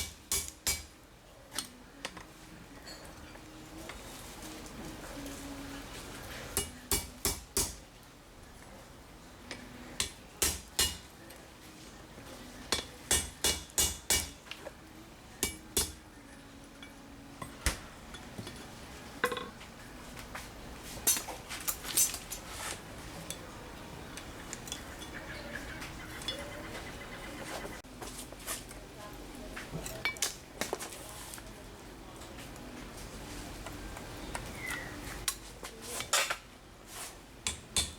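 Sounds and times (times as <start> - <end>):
hammer tapping metal: 0.0 - 0.9, 6.6 - 7.8, 10.0 - 11.1, 12.7 - 14.4, 15.4 - 16.0, 37.4 - 37.9.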